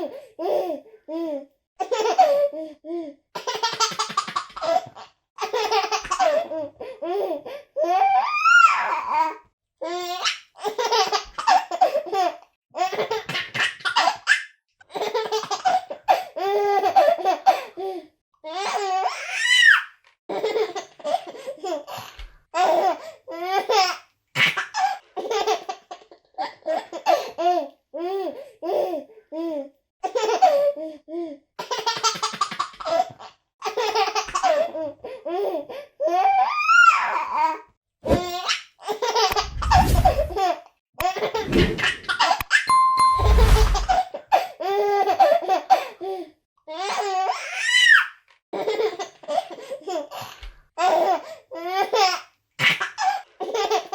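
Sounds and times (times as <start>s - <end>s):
baby laughing: 3.4s - 7.3s.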